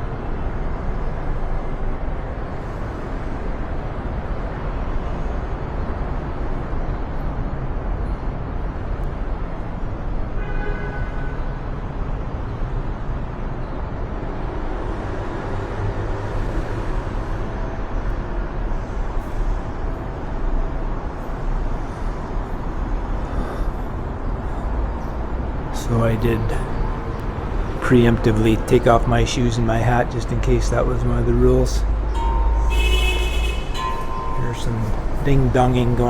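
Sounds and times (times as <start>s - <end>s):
street traffic rumble: 0.0s - 36.0s
short pitched tone: 32.2s - 35.9s.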